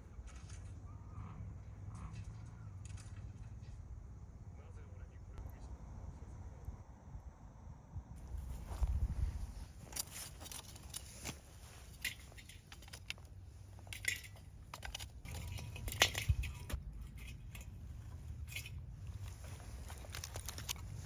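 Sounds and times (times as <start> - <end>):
wind rumble on microphone: 5.4 - 21.0
crinkling and clicking of handling: 8.4 - 21.0.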